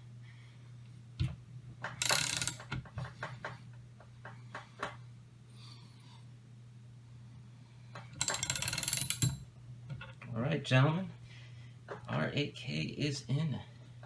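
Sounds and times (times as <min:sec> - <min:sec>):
barrel press clicking and ratcheting: 0:02.0 - 0:02.9, 0:08.2 - 0:09.4.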